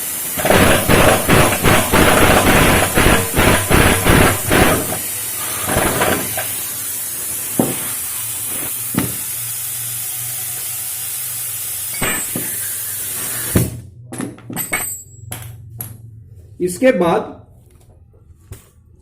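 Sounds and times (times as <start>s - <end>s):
steady hiss: 0.0s - 13.8s.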